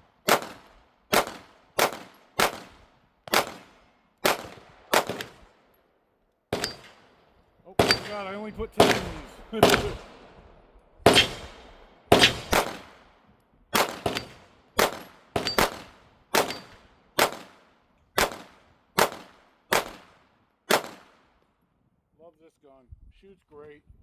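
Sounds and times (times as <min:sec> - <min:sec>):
pistol shots: 0:00.2 - 0:05.5, 0:06.5 - 0:07.2, 0:07.8 - 0:10.3, 0:11.0 - 0:13.1, 0:13.7 - 0:17.6, 0:18.2 - 0:21.2.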